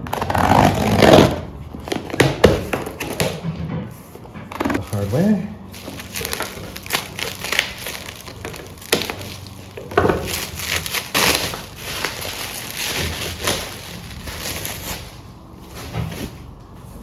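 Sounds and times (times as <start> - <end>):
sharp knocks: 2.3 - 4.8
packaging crinkling and tearing: 4.5 - 15.2.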